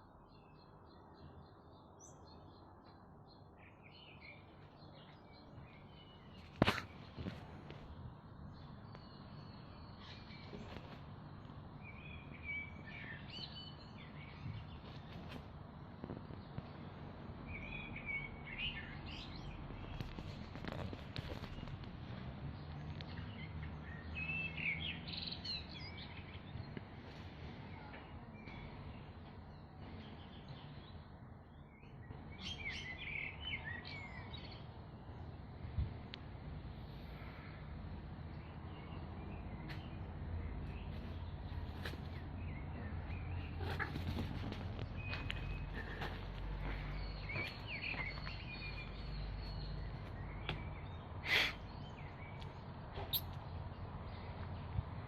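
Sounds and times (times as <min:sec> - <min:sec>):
birds chirping: 0:36.9 - 0:55.0
outdoor background hiss: 0:46.4 - 0:55.0.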